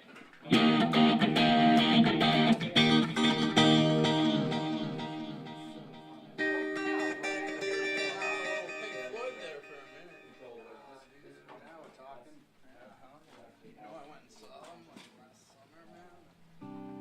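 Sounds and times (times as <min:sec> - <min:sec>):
guitar strumming chords: 0:00.5 - 0:10.7, 0:16.6 - 0:17.0.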